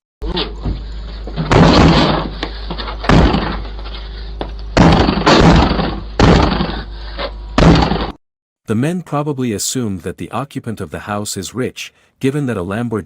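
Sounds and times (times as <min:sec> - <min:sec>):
steady low hum: 0:00.2 - 0:13.0
loud bangs on a door: 0:01.5 - 0:02.3, 0:03.1 - 0:03.6, 0:04.8 - 0:06.8, 0:07.6 - 0:08.2.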